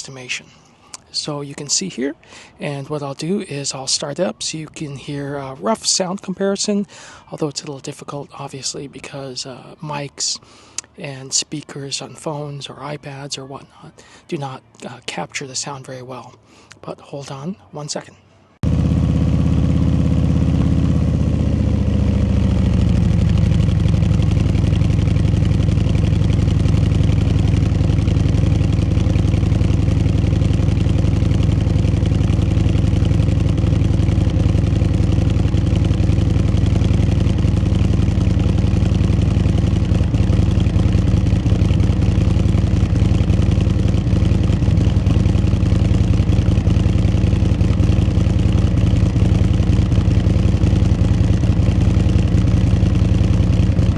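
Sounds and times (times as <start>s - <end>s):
motorcycle engine idling: 18.6s - 53.9s.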